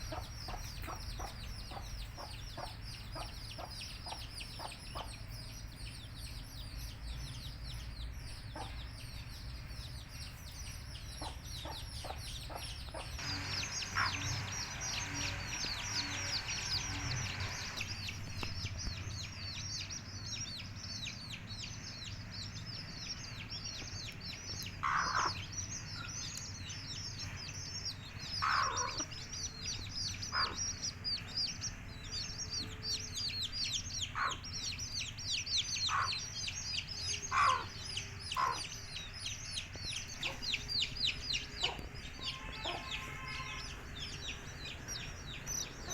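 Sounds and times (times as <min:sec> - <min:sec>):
hen clucking: 0:00.0 - 0:05.4, 0:08.3 - 0:09.5, 0:11.0 - 0:19.3, 0:24.5 - 0:26.3, 0:27.2 - 0:45.9
chicks peeping: 0:00.0 - 0:45.9.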